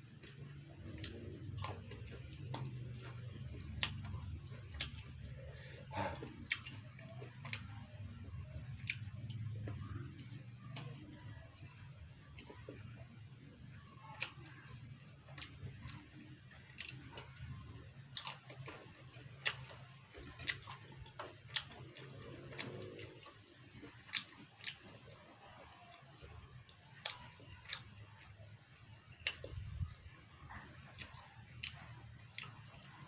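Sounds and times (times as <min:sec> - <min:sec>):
faint low hum: 0:00.0 - 0:33.0
person chewing crunchy food: 0:00.0 - 0:33.0
wet mouth clicks: 0:00.8 - 0:07.9.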